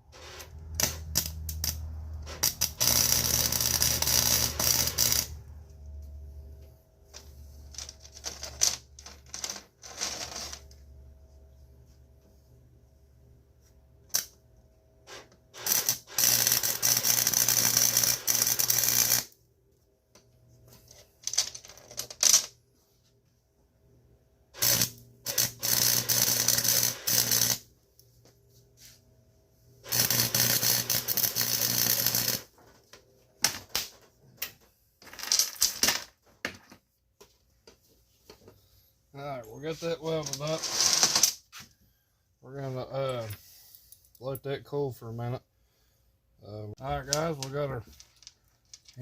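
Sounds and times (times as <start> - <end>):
electric welder crackling: 0.3 - 5.4, 14.1 - 14.4, 15.1 - 19.4, 24.6 - 27.7, 29.8 - 32.5.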